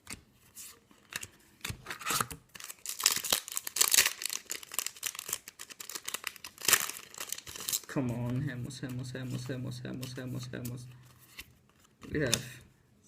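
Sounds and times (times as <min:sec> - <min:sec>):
foil wrapper tearing and crinkling: 0:01.9 - 0:07.9.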